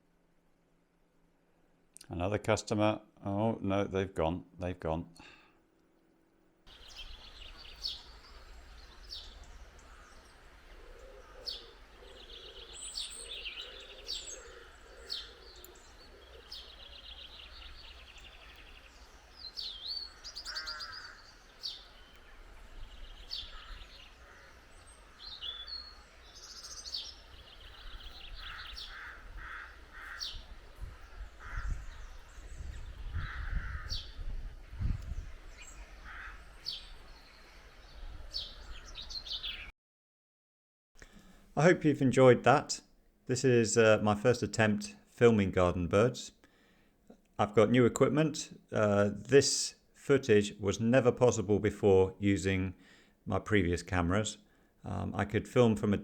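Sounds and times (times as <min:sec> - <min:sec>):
songbirds chirping and twittering: 0:01.9 - 0:39.7, 0:41.0 - 0:56.0.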